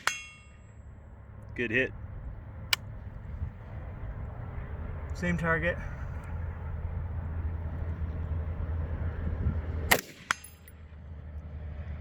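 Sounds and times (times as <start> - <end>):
bullet pinging steel target: 0.0 - 0.8, 9.9 - 10.8
rifle shot: 9.9 - 10.6.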